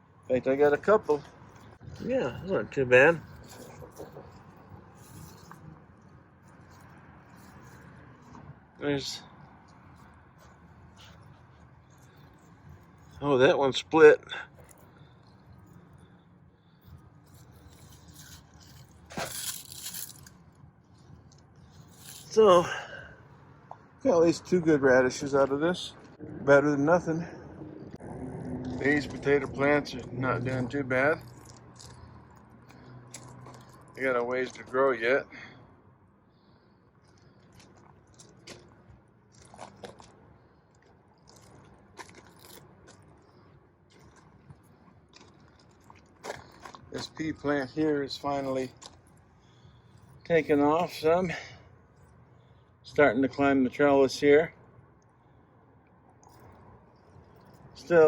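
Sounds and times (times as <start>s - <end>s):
crunching and rustling in plants: 0.4s - 8.6s, 16.7s - 22.5s, 37.0s - 49.2s
plants and soil rustling: 21.0s - 22.7s.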